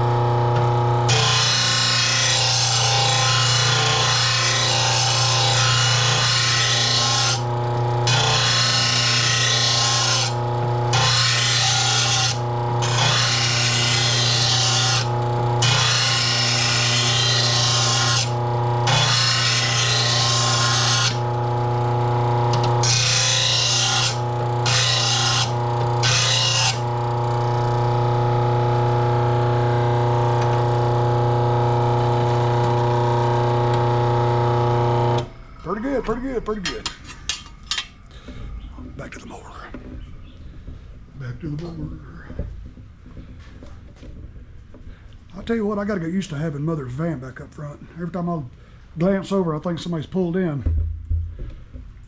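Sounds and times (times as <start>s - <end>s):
electric grinder motor hum: 0.0s - 35.3s.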